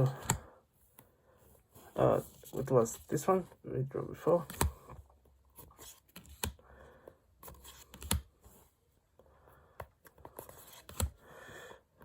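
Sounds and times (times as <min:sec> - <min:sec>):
trading cards sliding and rustling: 0:04.3 - 0:06.6, 0:07.3 - 0:08.8, 0:09.8 - 0:11.2.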